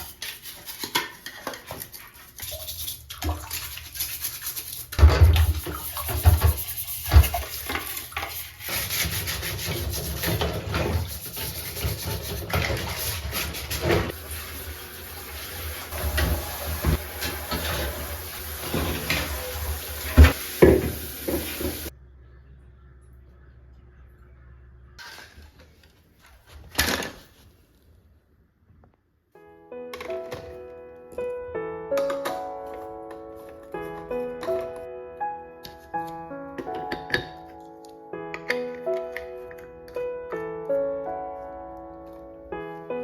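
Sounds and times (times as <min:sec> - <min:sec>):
scrubbing and rubbing: 0:00.0 - 0:21.9
water running and splashing: 0:00.0 - 0:21.9.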